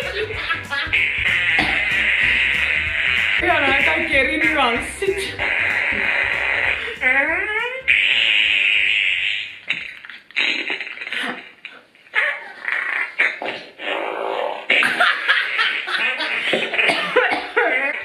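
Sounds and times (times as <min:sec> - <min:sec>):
voices: 0:00.0 - 0:02.8, 0:03.4 - 0:06.0
fart sound effects: 0:00.0 - 0:11.6, 0:12.6 - 0:18.0.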